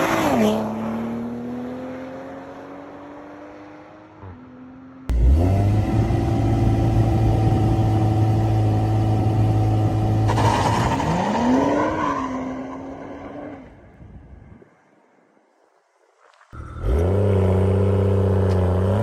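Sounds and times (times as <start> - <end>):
sports car engine revving: 5.1 - 10.3.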